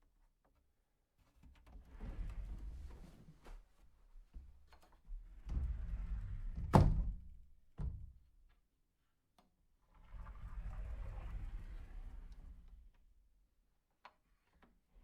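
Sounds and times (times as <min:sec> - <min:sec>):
door closing with thud: 0:06.6 - 0:07.2.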